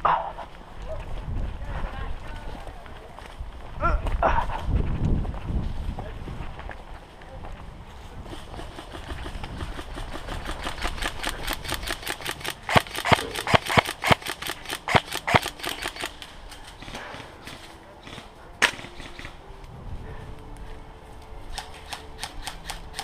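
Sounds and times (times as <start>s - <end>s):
airsoft guns firing: 8.3s - 19.4s.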